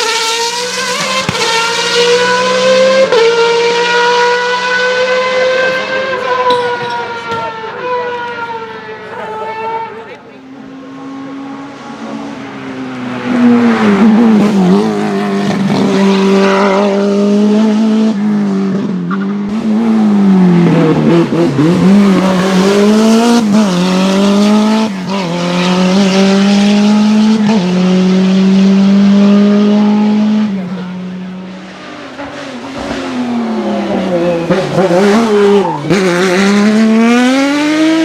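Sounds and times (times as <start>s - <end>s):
race car engine at full throttle: 0.0s - 38.0s.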